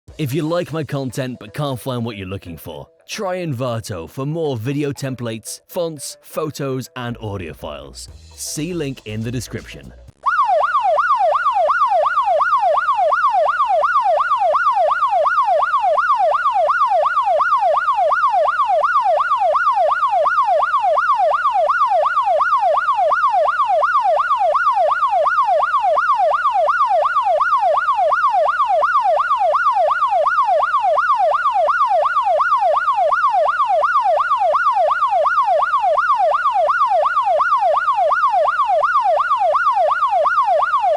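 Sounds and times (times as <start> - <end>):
police siren yelping: 10.2 - 40.9.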